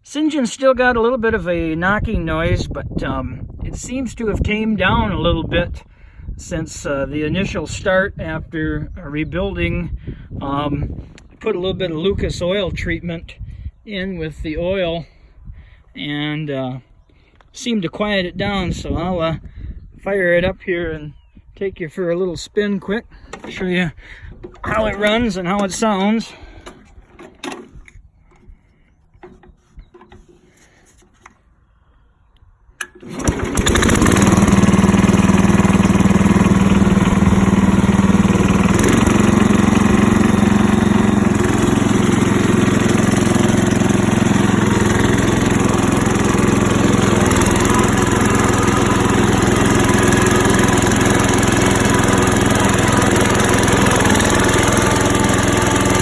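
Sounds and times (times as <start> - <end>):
small engine running: 32.8 - 56.0.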